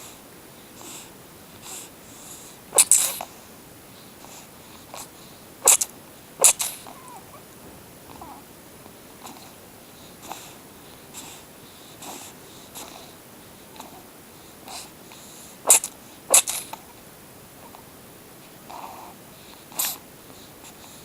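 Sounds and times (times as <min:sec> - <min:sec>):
kitten sneezing: 0:02.7 - 0:03.2, 0:05.6 - 0:07.4, 0:15.7 - 0:16.7.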